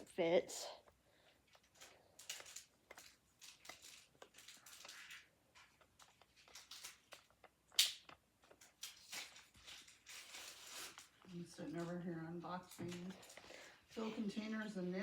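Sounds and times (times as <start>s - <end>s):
screwdriver turning screw in plastic: 0.8s - 13.5s.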